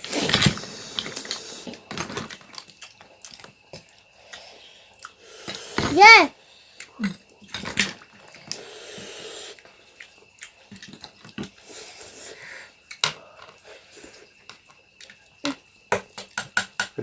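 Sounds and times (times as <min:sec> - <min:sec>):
eating clicks and smacks: 0:00.1 - 0:05.6
hissing slurp: 0:08.5 - 0:10.1.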